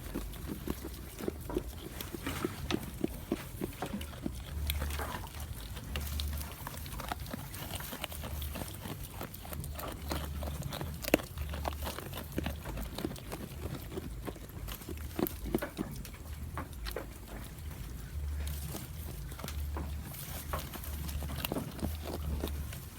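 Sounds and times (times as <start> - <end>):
goat chewing and crunching food: 0.0 - 22.9.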